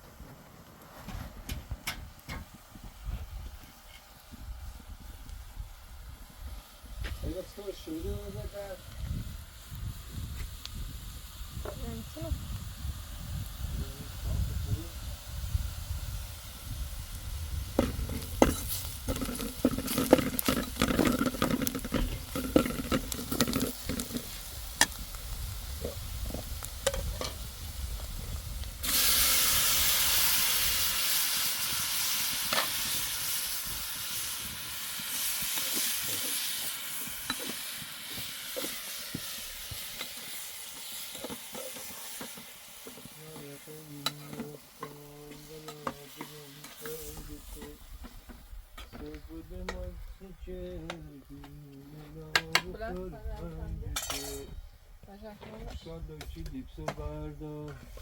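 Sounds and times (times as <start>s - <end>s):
food sizzling in hot oil: 1.7s - 50.8s, 54.0s - 54.5s
stirring with clinks and scrapes: 17.8s - 25.1s, 35.2s - 49.8s, 54.0s - 54.6s.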